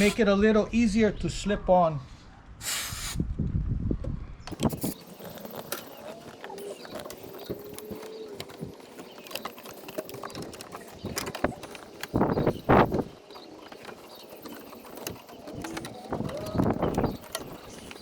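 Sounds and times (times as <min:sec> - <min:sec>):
handling clicks and knocks: 0:04.5 - 0:18.0.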